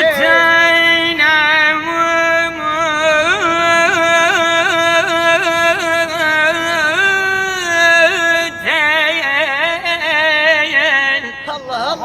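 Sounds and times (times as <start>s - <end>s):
solo voice singing melismatic line: 0.0s - 9.3s.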